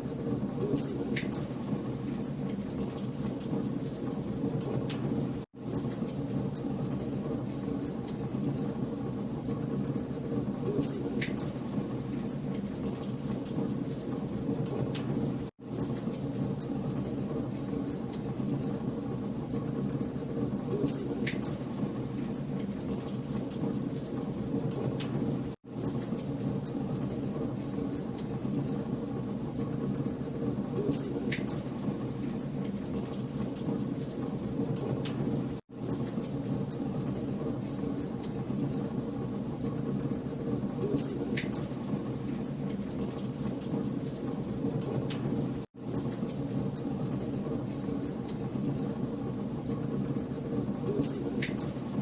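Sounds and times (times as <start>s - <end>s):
wood fire crackling and popping: 49.6s - 52.0s.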